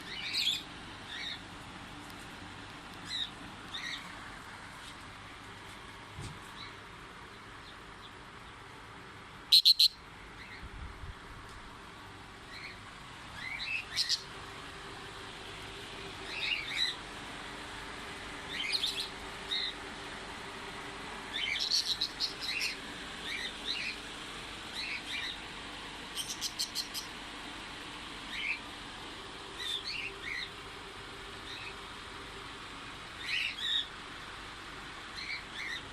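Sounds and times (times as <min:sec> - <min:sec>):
parrots chirping: 0:00.1 - 0:01.4, 0:09.5 - 0:10.6, 0:12.5 - 0:14.3, 0:16.3 - 0:17.0, 0:18.5 - 0:19.8, 0:21.3 - 0:24.0, 0:24.7 - 0:25.4, 0:26.1 - 0:27.1, 0:33.2 - 0:33.9.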